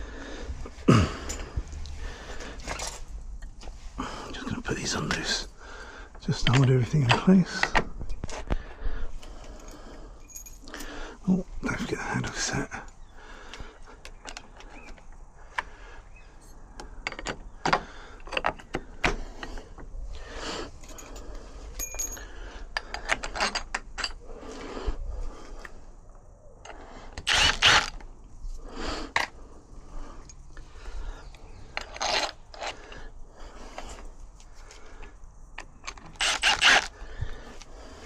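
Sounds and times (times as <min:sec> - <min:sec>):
metal parts clicking and clinking: 0:01.2 - 0:03.5, 0:09.2 - 0:10.9, 0:20.7 - 0:24.2, 0:30.2 - 0:37.7.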